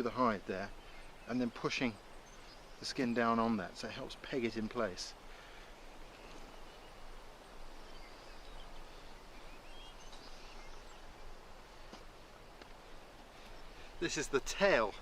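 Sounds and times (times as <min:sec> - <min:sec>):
faint bird chirps: 0:00.0 - 0:12.0
steady background hiss: 0:00.0 - 0:15.0.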